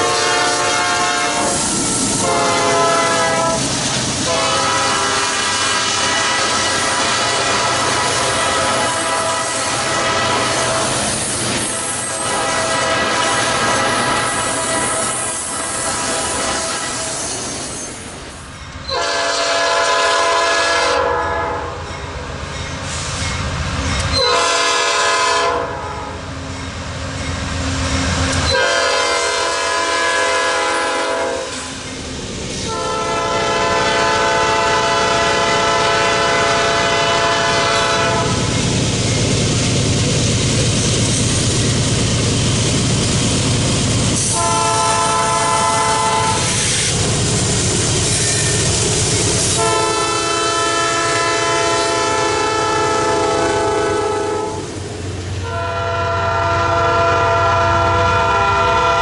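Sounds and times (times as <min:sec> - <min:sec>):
train horn blasts: 0:00.0 - 0:11.0, 0:11.8 - 0:17.4, 0:18.8 - 0:21.9, 0:24.1 - 0:26.2, 0:28.4 - 0:31.7, 0:32.6 - 0:38.5, 0:44.2 - 0:47.1, 0:49.4 - 0:54.8, 0:55.4 - 0:59.0
passing train rumble and clatter: 0:00.0 - 0:59.0.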